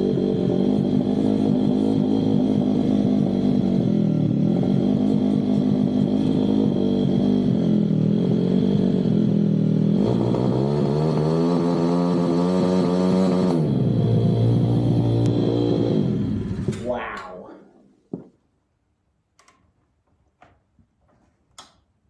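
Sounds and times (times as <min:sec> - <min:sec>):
motorbike engine running and revving: 0:00.0 - 0:16.8.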